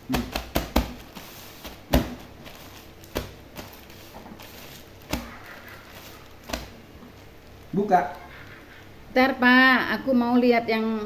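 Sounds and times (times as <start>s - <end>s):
objects knocking and tapping: 0.0s - 5.4s.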